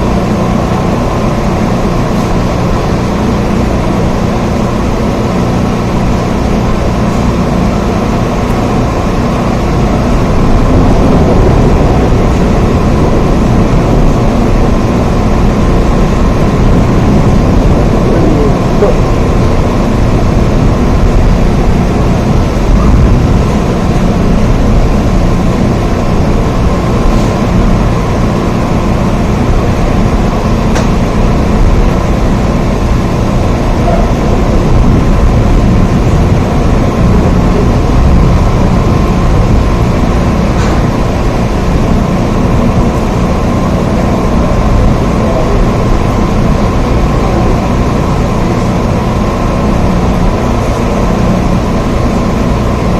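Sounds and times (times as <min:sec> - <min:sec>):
heavy low rumble: 0:00.0 - 0:52.9
steady rain: 0:00.0 - 0:52.9.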